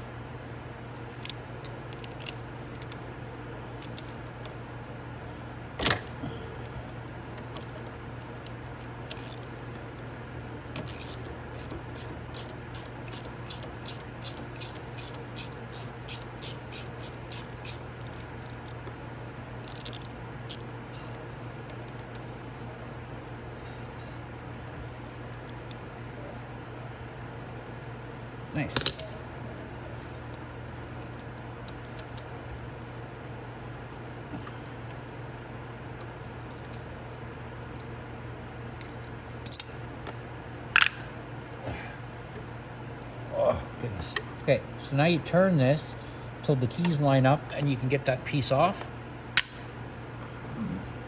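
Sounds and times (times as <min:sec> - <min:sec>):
steady low hum: 0:00.0 - 0:51.0
socket ratchet clicking: 0:01.2 - 0:03.1, 0:03.8 - 0:04.6, 0:09.1 - 0:09.5, 0:10.8 - 0:18.8, 0:19.6 - 0:20.6
metal tools and parts clinking: 0:10.8 - 0:18.8, 0:38.8 - 0:39.9.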